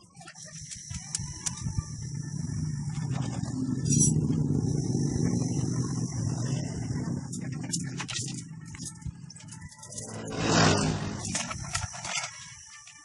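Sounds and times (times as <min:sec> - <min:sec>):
engine rumbling: 0:01.8 - 0:11.9.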